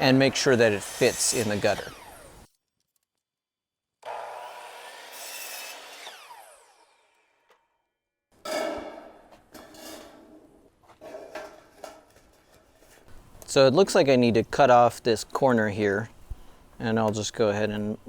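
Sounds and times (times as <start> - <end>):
power saw cutting wood: 0.0 - 2.5, 4.0 - 7.6.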